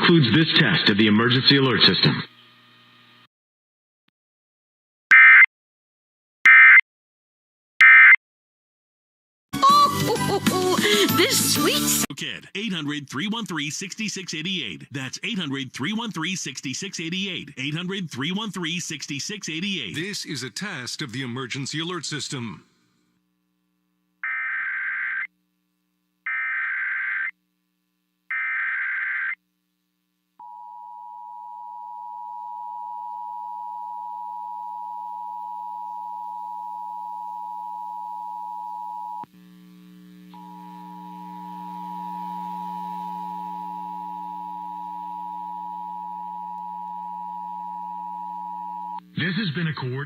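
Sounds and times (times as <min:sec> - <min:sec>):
low hum: 0:31.2 - 0:49.2
data burst tones: 0:38.3 - 0:49.4.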